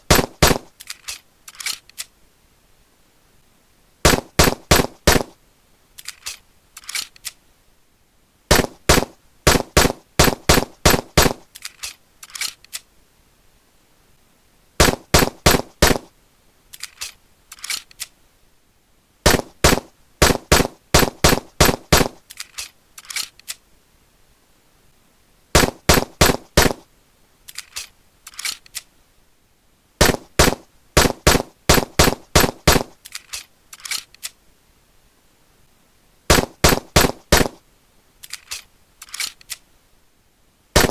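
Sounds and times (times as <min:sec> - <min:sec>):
pistol gunshots: 0:00.1 - 0:00.7, 0:04.1 - 0:05.3, 0:08.5 - 0:11.4, 0:14.8 - 0:16.1, 0:19.3 - 0:22.2, 0:25.6 - 0:26.8, 0:30.0 - 0:33.0, 0:36.3 - 0:37.6.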